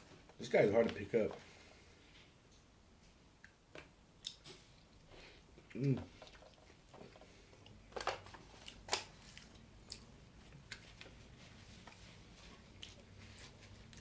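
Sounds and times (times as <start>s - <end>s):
eating and handling noises: 0.1s - 14.0s.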